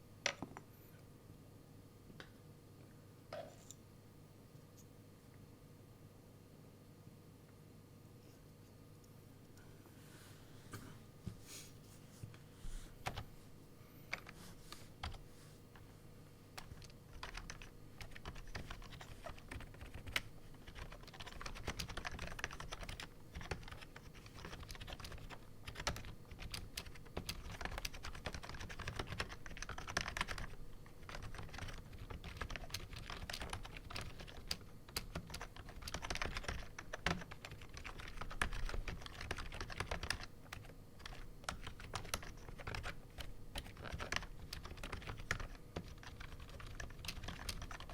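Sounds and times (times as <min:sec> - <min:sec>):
fast keyboard typing: 0:13.0 - 0:13.3, 0:15.0 - 0:15.2, 0:16.5 - 0:47.9.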